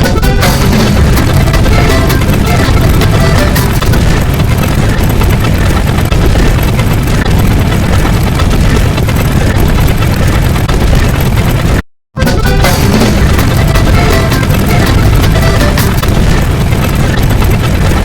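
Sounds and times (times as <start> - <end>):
deep rumbling noise: 0.0 - 18.0.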